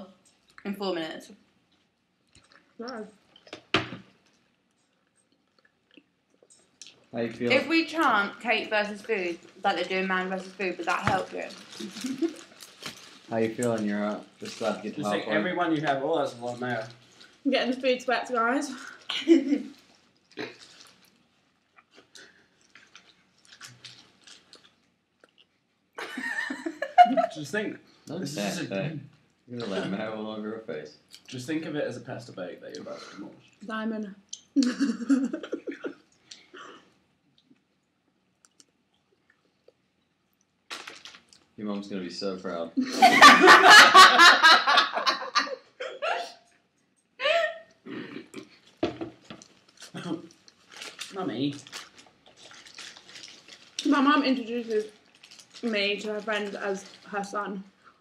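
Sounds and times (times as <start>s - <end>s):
faint wet chewing: 1.7s - 7.1s, 19.7s - 25.6s, 37.3s - 41.6s, 48.2s - 53.9s, 54.8s - 55.7s
people laughing: 34.7s - 36.0s, 42.8s - 46.3s.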